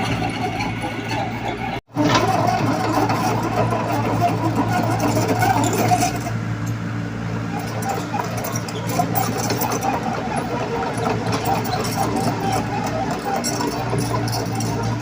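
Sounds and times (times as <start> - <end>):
diesel engine of heavy machinery: 0.0 - 15.0.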